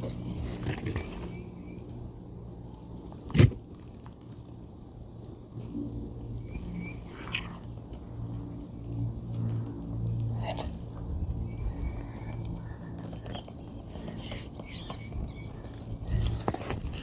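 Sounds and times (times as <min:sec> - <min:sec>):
steady low hum: 0:04.7 - 0:17.0.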